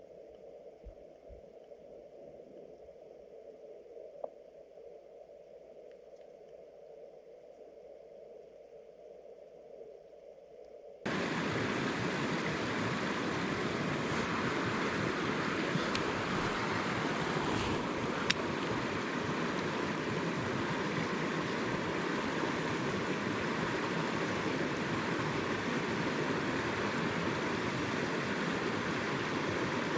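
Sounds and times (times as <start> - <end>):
stream water rushing: 11.1 - 29.9
faint clicks: 15.8 - 16.6, 18.1 - 18.7.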